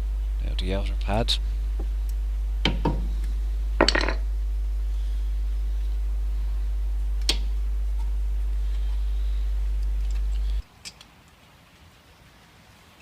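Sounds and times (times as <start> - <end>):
steady low hum: 0.0 - 10.7.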